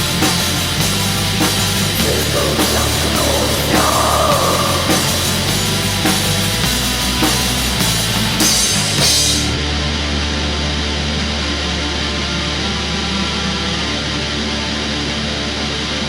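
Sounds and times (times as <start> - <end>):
drums and cymbals: 0.0 - 9.7
bass guitar: 0.0 - 16.0
distorted guitars: 0.0 - 16.0.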